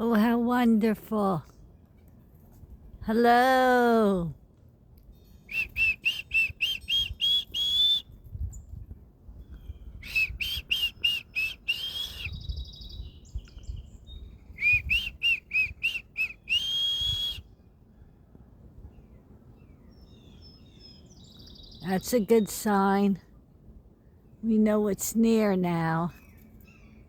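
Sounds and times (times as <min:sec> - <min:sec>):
songbird whistled notes: 0:05.4 - 0:08.7, 0:09.5 - 0:17.6.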